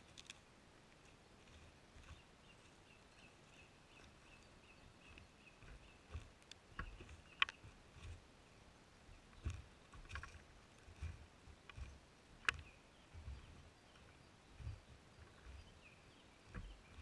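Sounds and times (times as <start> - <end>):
footsteps on wet forest floor: 0.0 - 17.0
twigs snapping: 5.0 - 8.2.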